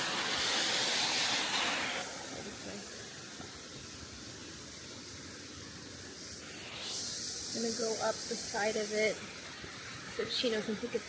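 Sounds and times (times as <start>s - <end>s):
waterfall rushing: 0.0s - 3.4s.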